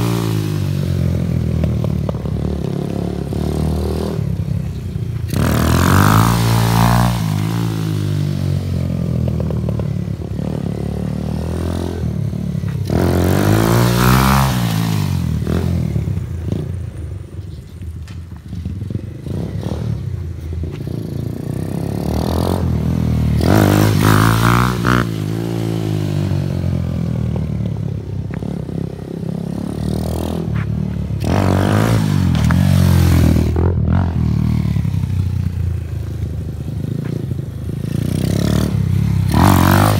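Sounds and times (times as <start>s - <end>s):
motorcycle revving past: 5.2s - 16.8s, 18.5s - 20.2s, 20.9s - 39.9s.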